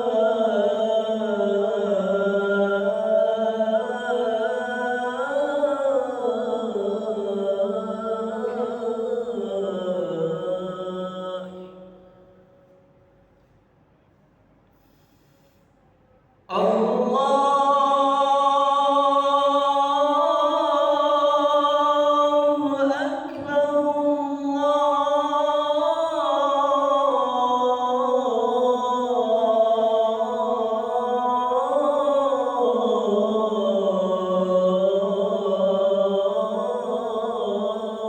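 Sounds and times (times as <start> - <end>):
man chanting call to prayer: 16.5 - 38.0.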